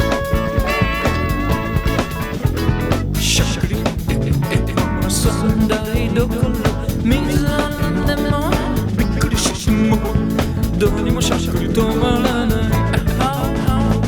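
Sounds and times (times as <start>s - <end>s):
pop song with guitar and drums: 0.0s - 14.0s
man singing: 3.2s - 14.0s.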